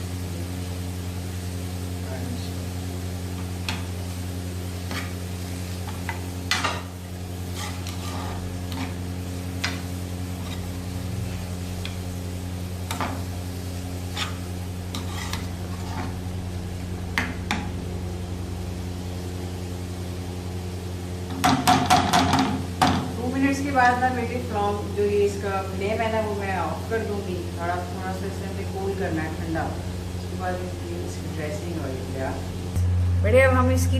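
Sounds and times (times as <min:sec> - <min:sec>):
vegetables sizzling in butter: 0:00.0 - 0:33.3
steady low hum: 0:00.0 - 0:33.9
spatula scraping a pan: 0:05.8 - 0:12.0, 0:12.8 - 0:16.2.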